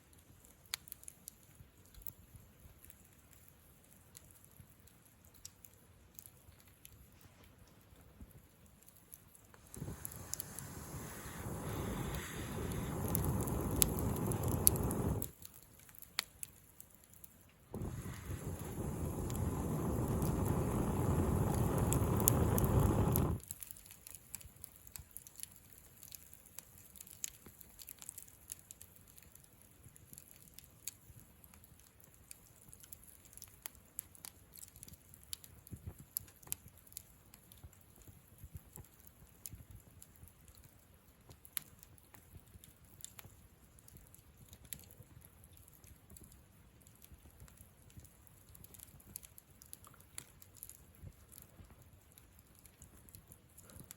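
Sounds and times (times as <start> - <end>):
campfire crackling: 0.0 - 53.9
sharp pops: 9.6 - 15.3, 17.8 - 23.4.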